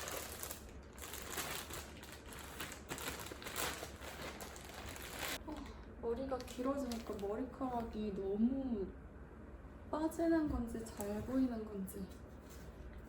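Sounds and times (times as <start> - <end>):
packaging crinkling and rustling: 0.0 - 5.7, 6.3 - 7.9.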